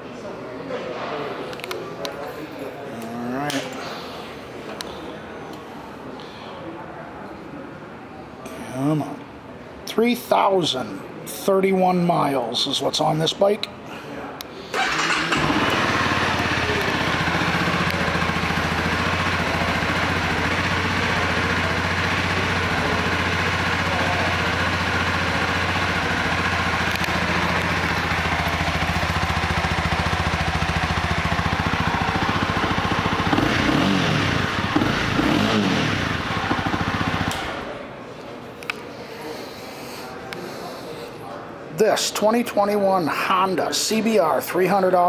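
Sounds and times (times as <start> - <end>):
motorcycle engine idling and revving: 14.8 - 37.8.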